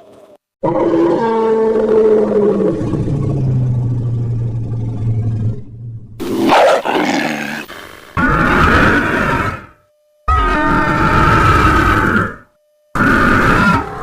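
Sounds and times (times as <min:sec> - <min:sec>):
monster roar: 0:13.0 - 0:14.0.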